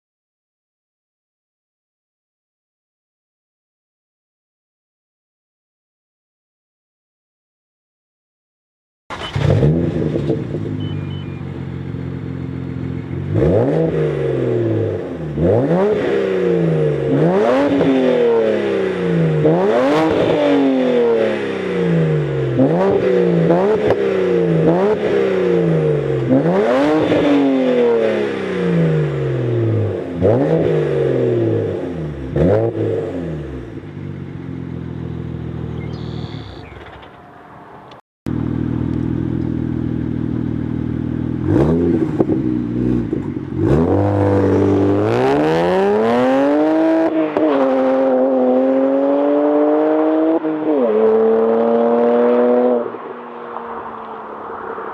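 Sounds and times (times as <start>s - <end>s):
car engine revving: 9.1s - 54.9s
car engine idling: 10.5s - 13.4s, 33.8s - 41.4s.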